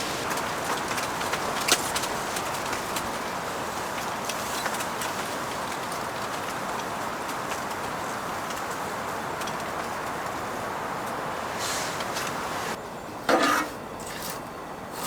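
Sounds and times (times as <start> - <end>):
blizzard wind rushing: 0.0 - 12.8
snow blowing against tent: 0.0 - 12.8.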